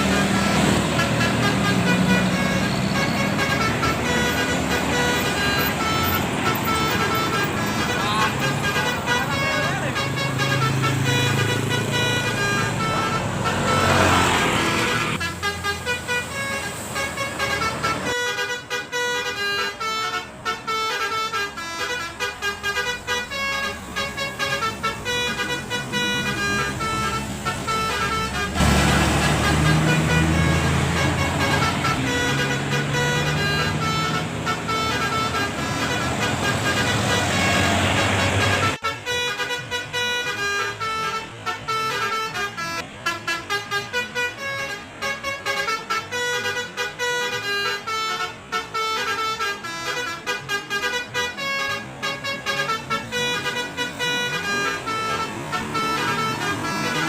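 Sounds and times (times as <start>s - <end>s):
diesel engine running: 0.0s - 38.8s, 49.5s - 57.0s
bus musical horn playing tune: 0.0s - 57.0s.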